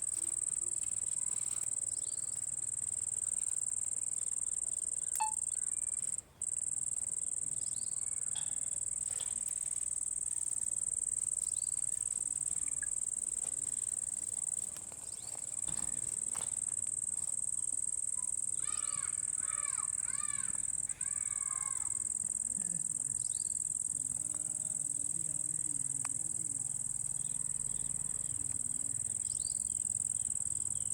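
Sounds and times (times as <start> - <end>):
high-pitched insect drone: 3.3 - 8.0, 9.8 - 13.3, 16.8 - 30.9.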